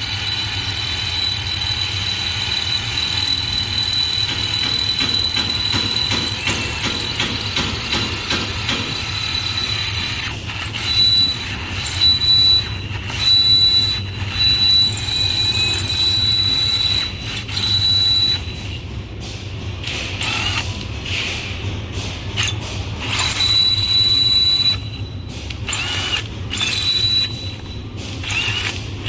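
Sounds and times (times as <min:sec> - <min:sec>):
drill motor humming: 0:00.0 - 0:18.5, 0:25.7 - 0:28.8
drill bit squealing through metal: 0:00.0 - 0:18.6, 0:22.4 - 0:25.0, 0:25.7 - 0:28.8.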